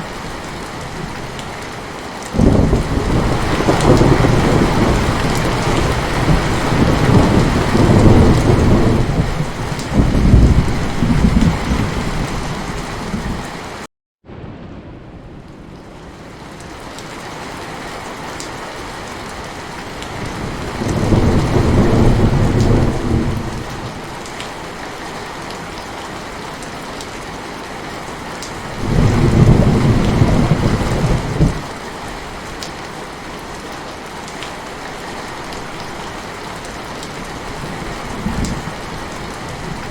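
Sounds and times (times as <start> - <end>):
heavy rain: 0.0 - 39.9
rolling thunder: 2.4 - 13.5, 14.2 - 16.6, 20.1 - 24.0, 28.7 - 31.7.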